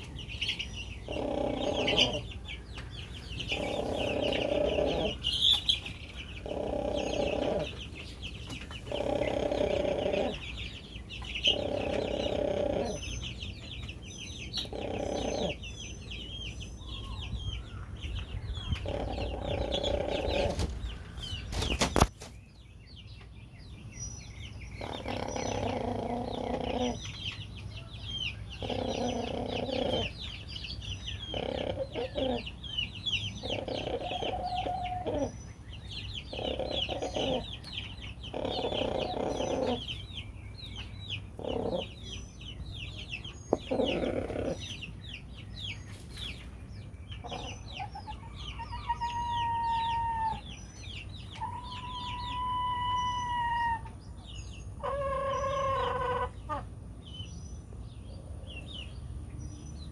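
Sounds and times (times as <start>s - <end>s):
small birds chirping: 0.0s - 59.9s
rooster low rough purr: 1.0s - 2.3s
rooster calls: 48.0s - 50.6s, 51.4s - 54.0s.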